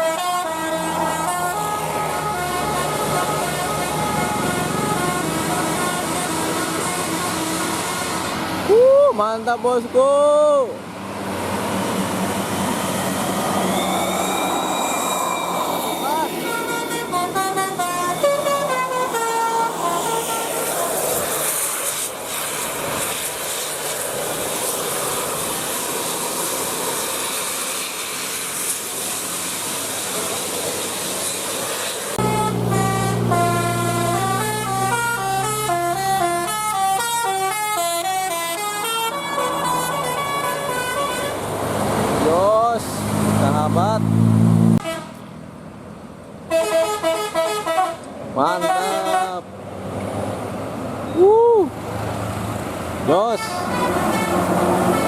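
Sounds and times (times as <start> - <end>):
musical bus horn melody: 0.0 - 8.6, 16.4 - 21.2, 32.2 - 41.5, 44.6 - 45.3, 46.5 - 49.4, 53.3 - 55.0
road traffic rushing: 0.0 - 55.0.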